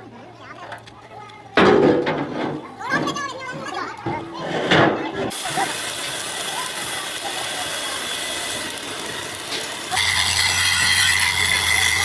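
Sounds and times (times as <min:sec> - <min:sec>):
workshop machine noise: 0:00.4 - 0:12.0
machine humming with high whine: 0:07.1 - 0:12.0.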